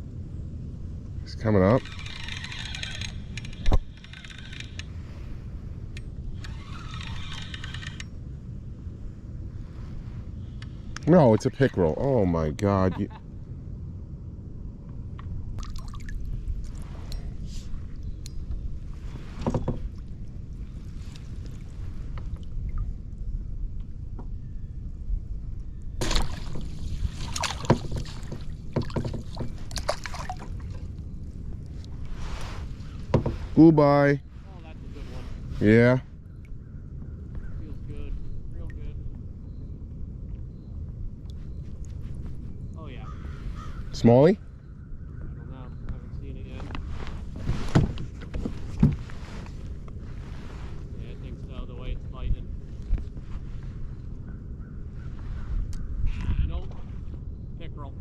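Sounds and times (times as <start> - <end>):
wind rumbling on microphone: 0.0 - 58.0
fishing reel ticking: 1.8 - 4.9, 6.4 - 8.1
gear knocking on kayak: 27.6 - 29.8.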